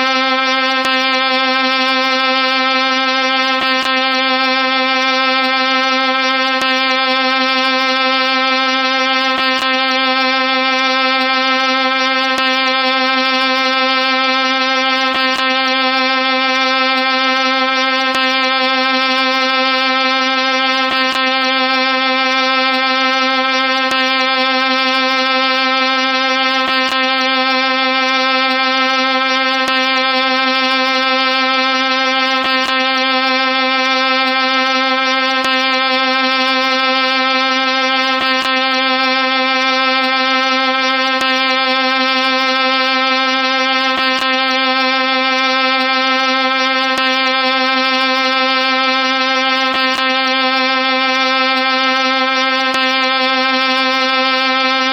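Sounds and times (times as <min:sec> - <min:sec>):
buzzy electronic tone: 0:00.0 - 0:54.9.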